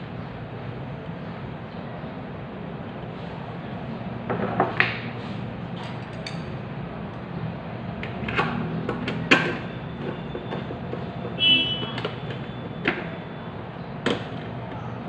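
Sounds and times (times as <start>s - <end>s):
tools knocking and clicking: 5.8s - 6.6s, 8.0s - 13.1s.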